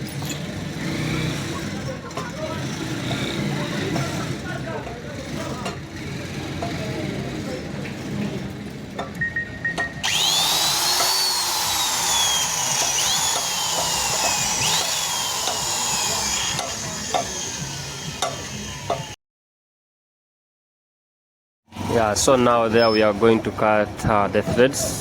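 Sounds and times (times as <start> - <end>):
power drill boring into metal: 10.0 - 19.2.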